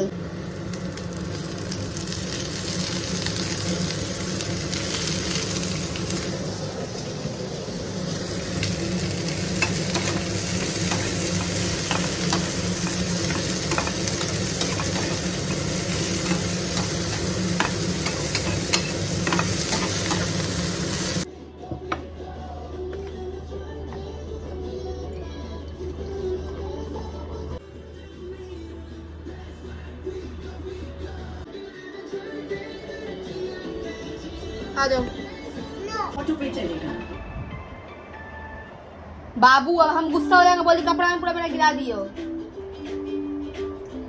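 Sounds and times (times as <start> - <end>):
food sizzling in a pan: 0.2 - 21.3.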